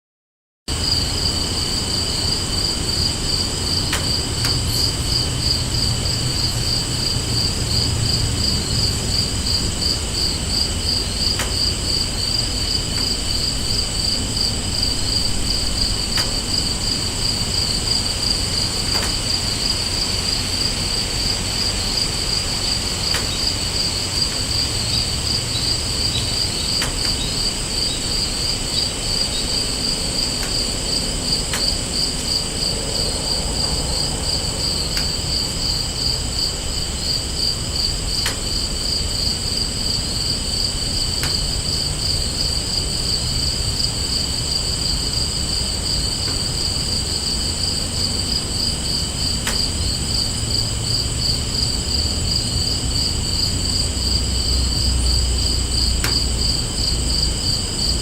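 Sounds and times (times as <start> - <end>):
crickets chirping: 0.7 - 58.0
insect trills: 0.7 - 58.0
low rumble: 31.3 - 36.9.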